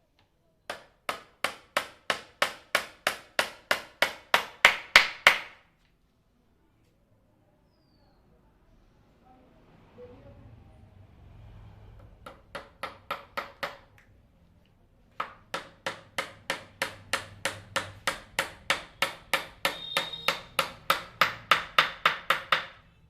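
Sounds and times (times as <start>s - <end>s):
hammer blows on wood: 15.6s - 22.8s.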